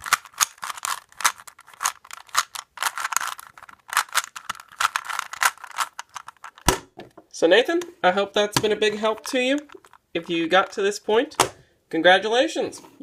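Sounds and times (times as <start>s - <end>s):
puzzle cube clicking turns: 0.0s - 6.9s, 8.6s - 10.8s.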